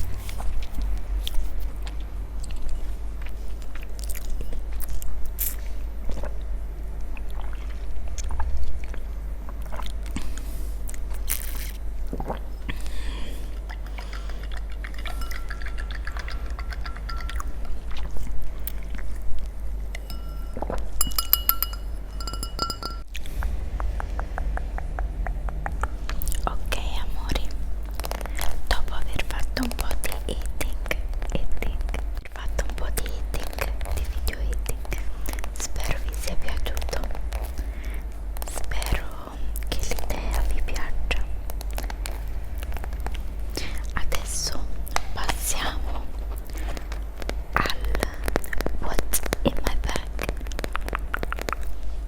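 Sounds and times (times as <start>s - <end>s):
crunching and chewing: 0.0s - 21.0s, 27.2s - 52.0s
low background hum: 0.0s - 52.0s.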